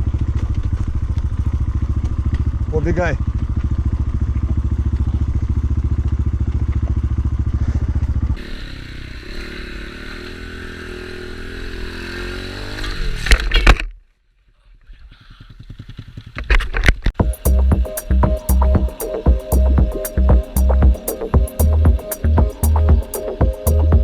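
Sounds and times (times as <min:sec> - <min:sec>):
dirt bike engine running: 0:00.0 - 0:12.9, 0:15.2 - 0:24.0
music: 0:17.2 - 0:24.0.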